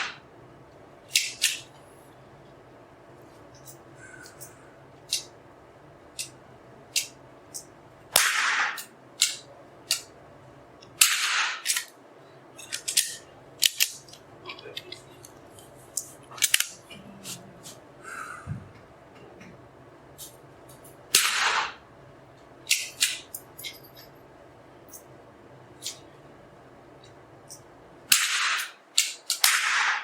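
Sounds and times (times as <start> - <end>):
sharp clicks and cracks: 0.0 - 1.8, 3.6 - 5.3, 6.1 - 10.2, 10.8 - 12.0, 12.6 - 16.9, 22.4 - 23.8, 27.0 - 30.0
rifle shots ringing indoors: 6.9 - 10.1, 10.9 - 12.0, 12.6 - 14.1, 21.1 - 21.9, 22.7 - 24.1, 28.1 - 30.0.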